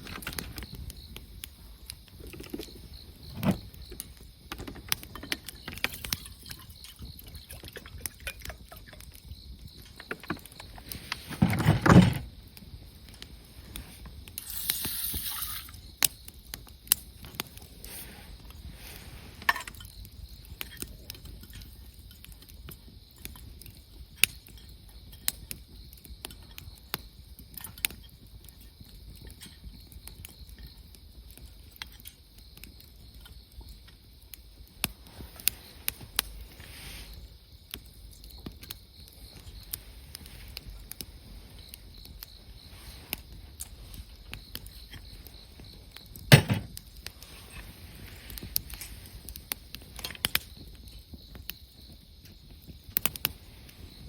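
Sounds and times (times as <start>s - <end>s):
campfire crackling and popping: 0.0s - 54.0s
loud thump: 46.3s - 46.8s.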